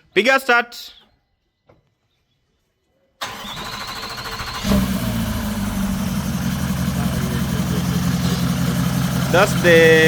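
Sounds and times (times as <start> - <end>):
diesel engine idling: 3.2 - 10.0
starter motor whine: 3.2 - 10.0.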